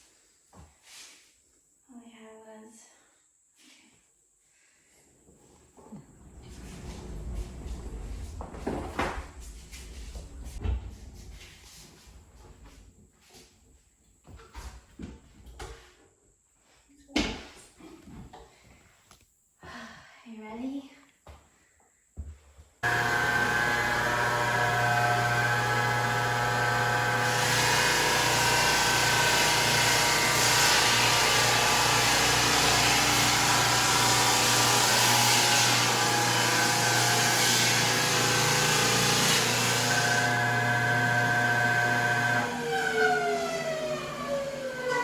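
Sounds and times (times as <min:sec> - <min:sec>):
floor sander motor hum: 0:06.1 - 0:11.4, 0:22.8 - 0:45.0
motor winding down: 0:22.8 - 0:45.0.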